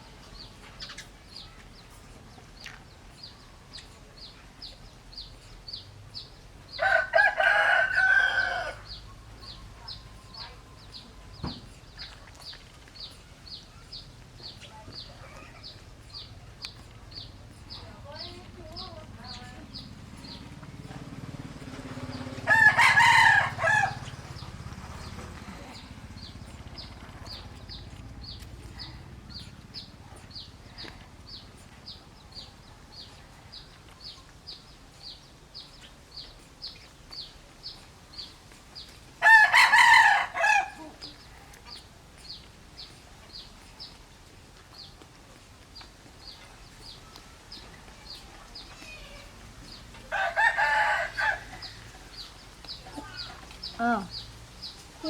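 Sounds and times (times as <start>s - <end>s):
rooster crowing: 6.8s - 8.9s, 22.1s - 24.2s, 39.2s - 40.8s, 50.1s - 52.0s.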